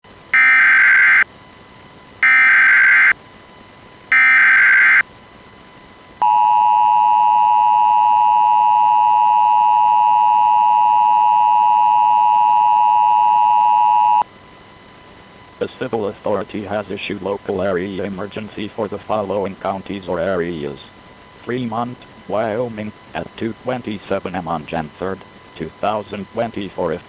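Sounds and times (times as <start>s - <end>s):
buzzing data blasts: 0.1s - 1.3s, 2.2s - 3.2s, 4.1s - 5.0s
steady two-tone beep: 0.4s - 1.2s, 2.2s - 3.1s, 4.1s - 5.0s.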